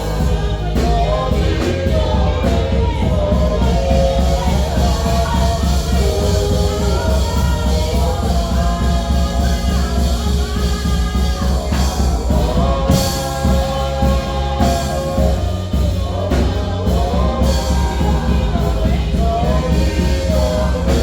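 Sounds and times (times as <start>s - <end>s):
bass and drums: 0.0s - 21.0s
choir singing: 0.0s - 21.0s.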